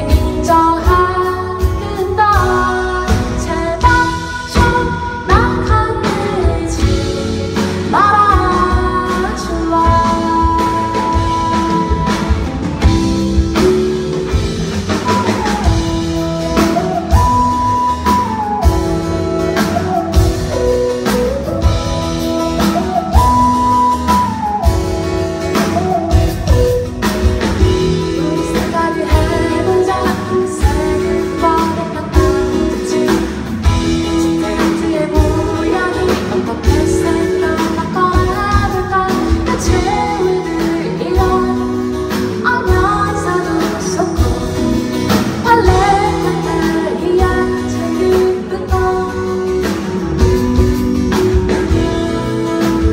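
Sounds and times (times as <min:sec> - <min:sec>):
woman singing: 0:00.0 - 0:13.7, 0:25.4 - 0:52.9
band with drum beats: 0:00.0 - 0:52.9.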